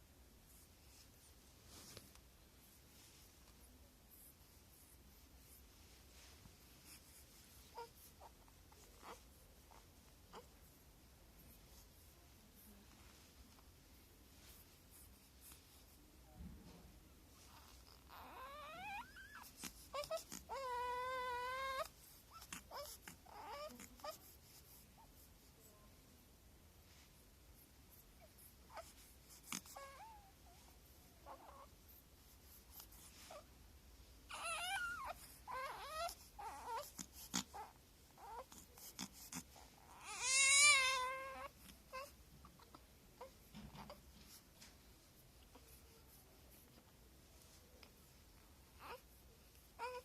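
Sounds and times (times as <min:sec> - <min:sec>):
baby whimpering and crying: 0:17.5 - 0:24.2, 0:29.5 - 0:30.3, 0:34.3 - 0:44.0, 0:49.8 - 0:50.0.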